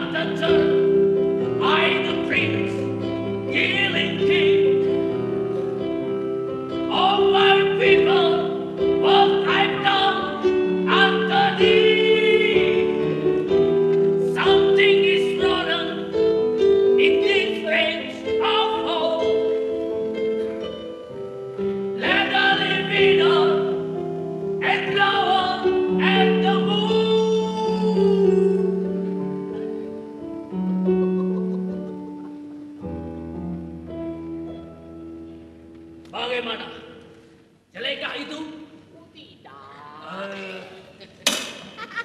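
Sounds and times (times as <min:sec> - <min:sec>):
person singing: 0:00.0 - 0:05.0, 0:06.8 - 0:20.6, 0:21.8 - 0:32.2.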